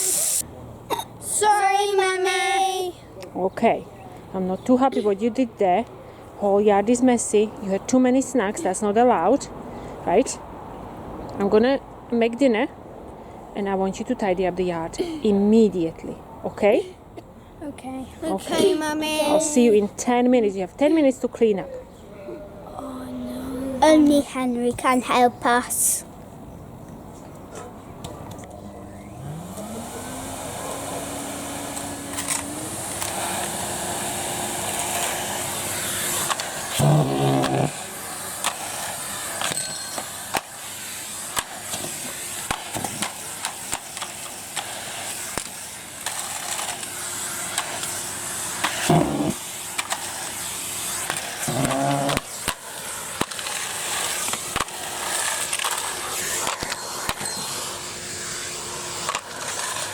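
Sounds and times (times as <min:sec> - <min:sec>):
vacuum cleaner motor whine: 0:28.7 - 0:41.1.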